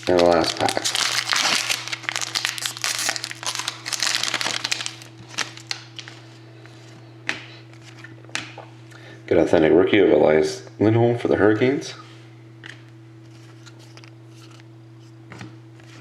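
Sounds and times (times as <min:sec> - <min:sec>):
wrapper tearing and crinkling: 0:00.0 - 0:06.1.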